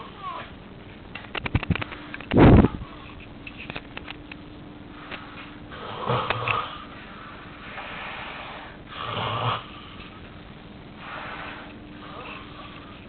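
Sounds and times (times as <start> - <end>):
soft breathing: 4.9 - 10.4, 11.0 - 13.0
man snoring heavily: 5.7 - 10.0, 11.0 - 12.9.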